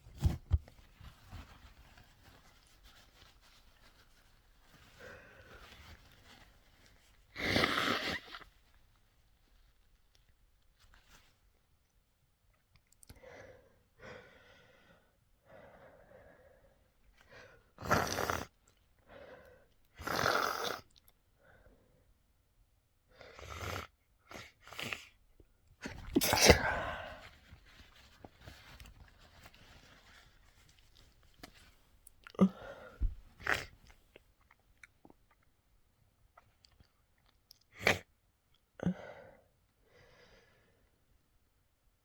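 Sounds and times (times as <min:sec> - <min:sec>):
person sneezing: 0:25.9 - 0:27.3.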